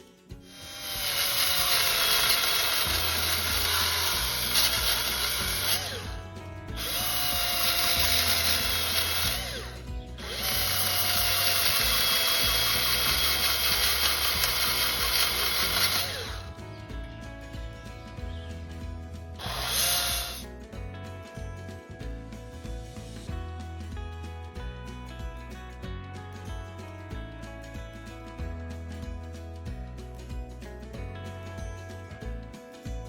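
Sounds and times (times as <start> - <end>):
power tool running: 0.4 - 16.9, 19.4 - 20.4.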